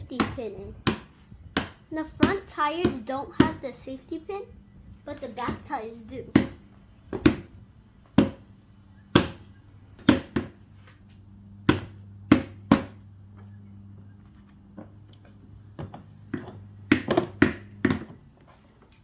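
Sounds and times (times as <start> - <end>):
faint low hum: 10.6 - 17.8.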